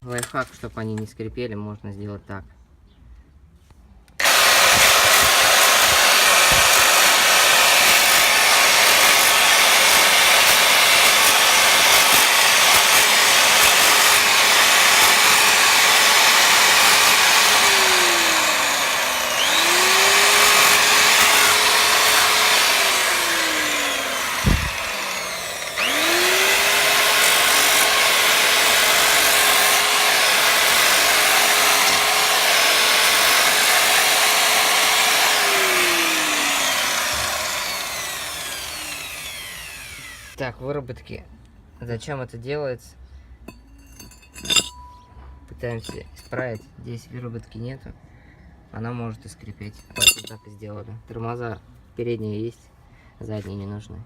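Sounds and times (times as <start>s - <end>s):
electric power tool running: 4.2s - 40.4s, 49.8s - 50.3s.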